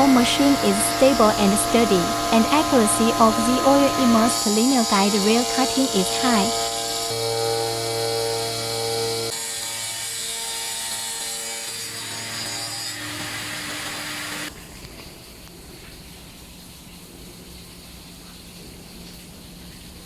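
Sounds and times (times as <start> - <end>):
machine low hum: 0.0 - 9.4
tile cutter sawing through board: 0.0 - 14.5.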